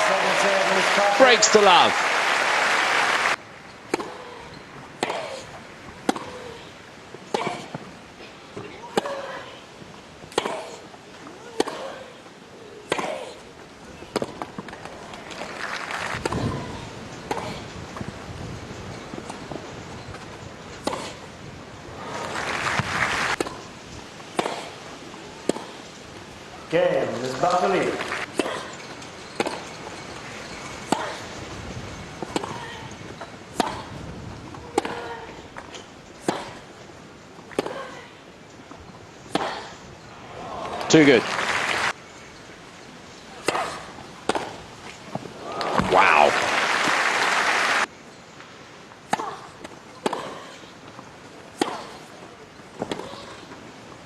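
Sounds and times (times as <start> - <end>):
crowd noise: 0.0 - 3.6, 40.1 - 42.0, 45.4 - 47.9
racquets striking tennis ball: 3.3 - 9.4, 10.2 - 12.1, 12.8 - 18.1, 19.1 - 21.3, 22.1 - 25.9, 27.0 - 38.0, 38.8 - 39.7, 43.4 - 47.0, 48.9 - 53.6
player grunting: 45.7 - 46.5.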